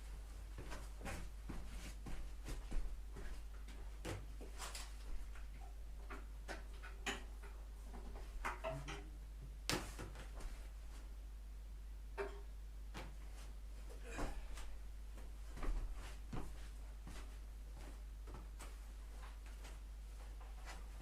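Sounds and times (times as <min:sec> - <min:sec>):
steady low hum: 0:09.0 - 0:21.0.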